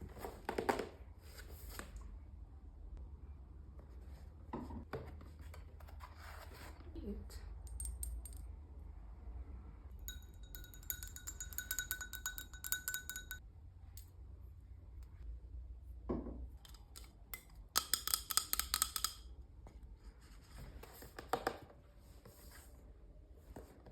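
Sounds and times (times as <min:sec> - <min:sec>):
utensil clinking on glass: 0:10.0 - 0:13.4.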